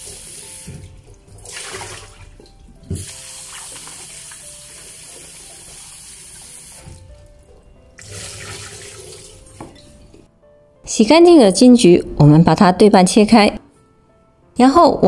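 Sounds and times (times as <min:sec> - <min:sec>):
fruit rinsed by hand: 0:00.0 - 0:10.2
tap water running into sink: 0:00.0 - 0:10.3.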